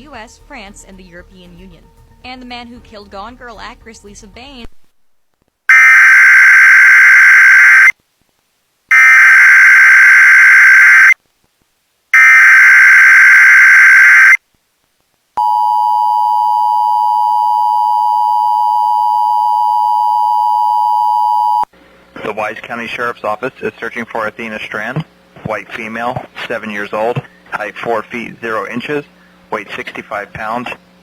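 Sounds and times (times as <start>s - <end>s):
harsh warbling data bursts: 5.7s - 7.9s, 8.9s - 11.2s, 12.2s - 14.4s
two-tone attention signal: 5.7s - 7.9s, 8.9s - 11.2s, 12.2s - 14.4s.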